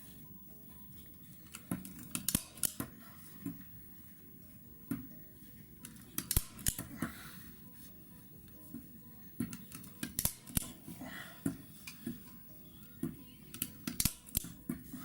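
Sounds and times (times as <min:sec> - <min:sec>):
staple gun firing: 0:01.9 - 0:02.8, 0:06.2 - 0:06.8, 0:09.6 - 0:10.7, 0:13.6 - 0:14.5.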